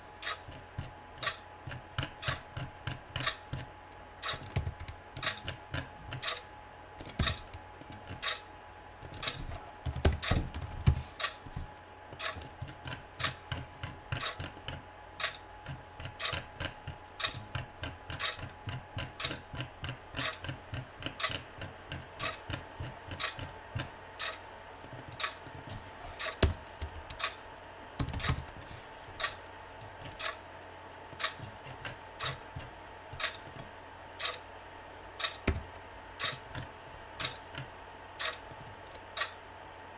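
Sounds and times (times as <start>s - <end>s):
faint steady hum: 0.0s - 39.9s
keyboard keystroke clicks: 25.2s - 27.4s, 28.0s - 29.3s, 35.2s - 36.4s.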